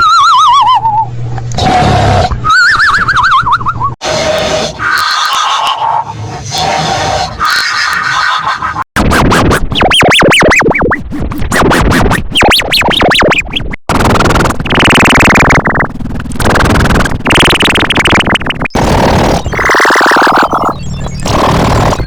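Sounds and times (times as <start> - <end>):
loud buzzing snores: 1.6 - 2.4, 18.7 - 22.0
whistling nose glides: 2.4 - 8.8, 9.8 - 13.7, 17.2 - 22.0.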